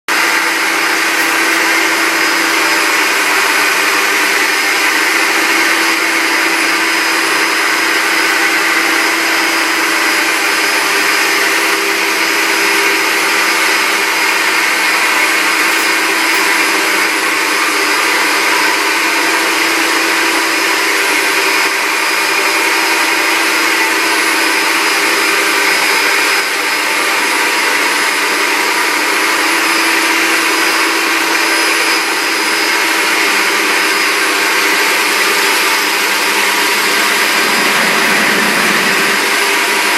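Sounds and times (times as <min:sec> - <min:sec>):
concrete grinder motor whine: 0:00.1 - 0:39.9.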